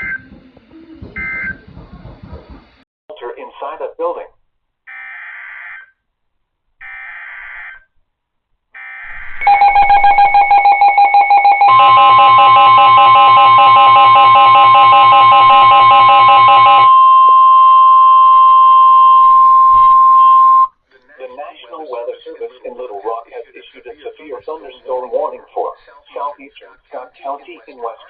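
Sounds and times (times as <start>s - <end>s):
digital header squawk: 8.8s - 10.5s
pulsing alert tone: 9.0s - 17.0s.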